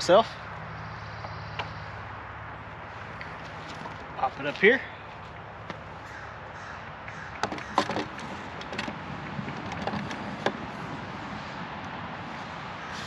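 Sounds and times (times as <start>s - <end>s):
crow cawing: 6.0s - 8.0s.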